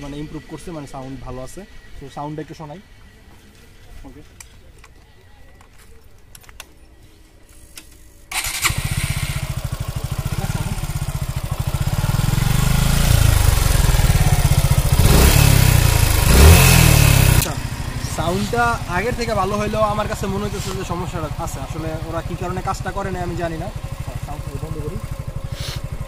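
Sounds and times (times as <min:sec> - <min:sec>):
motorcycle engine running and revving: 0:08.4 - 0:26.0.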